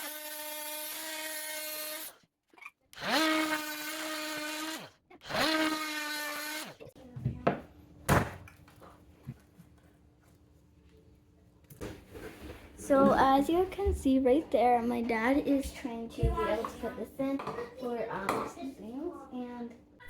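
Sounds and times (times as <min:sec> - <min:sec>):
power tool motor bursts: 0:00.0 - 0:02.2, 0:03.0 - 0:06.9.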